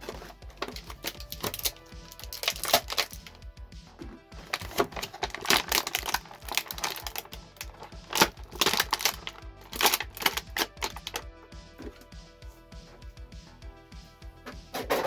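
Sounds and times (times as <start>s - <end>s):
plastic packaging clicking and crinkling: 0.0s - 3.4s, 4.4s - 11.2s
synthwave music with beat: 0.0s - 15.0s.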